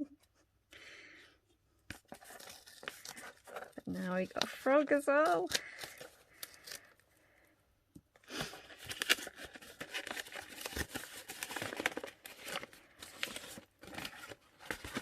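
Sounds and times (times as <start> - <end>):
paper wrapping rustling: 1.9 - 7.0, 8.3 - 15.0.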